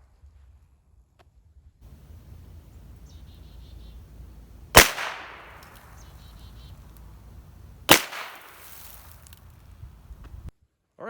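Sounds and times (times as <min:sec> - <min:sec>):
revolver shots echoing: 0:01.9 - 0:09.4
revolver hammer cocking clicks: 0:04.8 - 0:06.1, 0:07.9 - 0:08.6.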